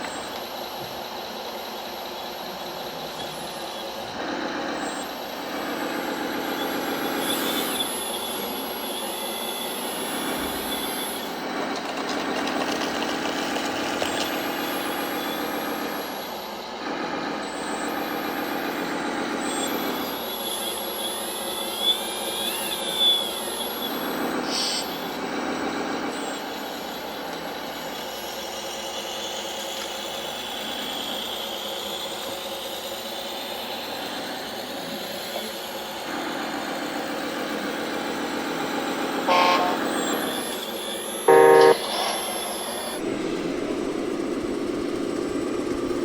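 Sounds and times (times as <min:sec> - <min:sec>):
electronic diesel engine sounds: 0:00.0 - 0:46.0
horn toot: 0:39.3 - 0:40.4, 0:41.3 - 0:43.0
horn blast: 0:39.3 - 0:40.5, 0:41.3 - 0:43.0.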